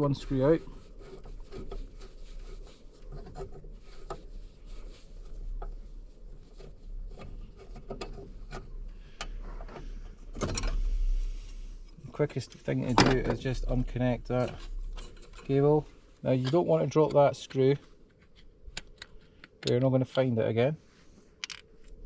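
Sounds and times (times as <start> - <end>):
low steady rumble: 0.0 - 19.4.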